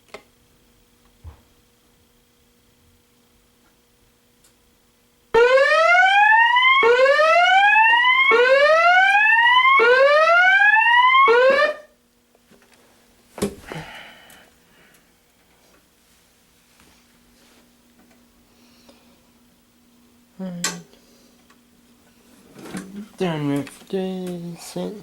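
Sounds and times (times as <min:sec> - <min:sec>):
fire alarm whoop tone: 0:05.4 - 0:11.9.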